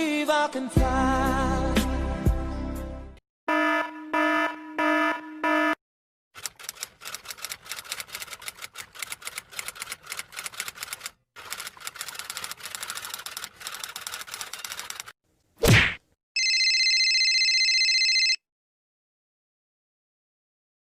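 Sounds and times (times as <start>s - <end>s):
typewriter keystrokes clattering: 6.4s - 15.1s.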